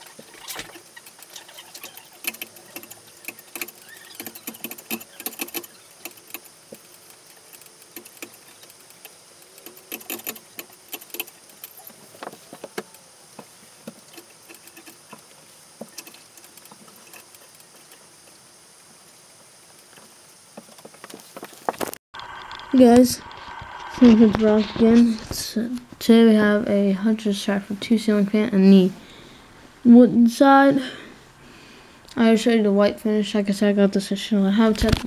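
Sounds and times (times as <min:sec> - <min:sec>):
fan blades and screws clicking: 0:00.0 - 0:18.5.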